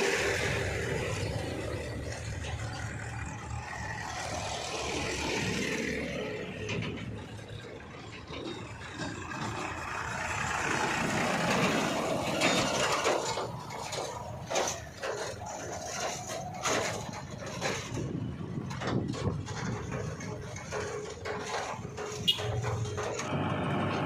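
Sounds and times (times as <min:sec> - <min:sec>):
diesel machinery engine running: 0:00.0 - 0:24.0
metal clanks: 0:00.0 - 0:24.0.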